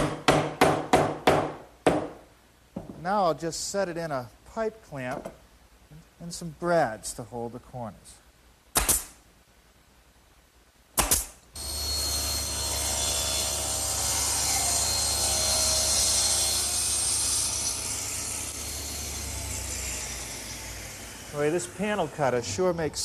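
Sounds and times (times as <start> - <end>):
sharp snap: 8.7 - 9.2, 11.0 - 11.5
circular saw cutting wood: 11.6 - 23.0.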